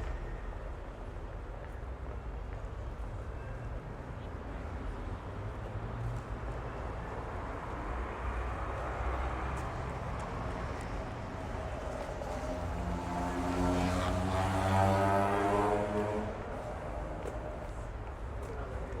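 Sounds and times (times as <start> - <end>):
traffic rumble: 0.0 - 19.0
vehicle engine passing by: 12.2 - 16.6.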